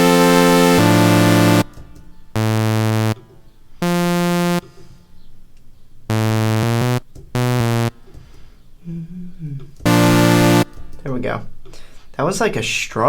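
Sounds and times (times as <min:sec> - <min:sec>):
buzzy synthesizer chords: 0:00.0 - 0:01.7, 0:02.4 - 0:03.2, 0:03.8 - 0:04.6, 0:06.1 - 0:08.0, 0:09.9 - 0:10.9.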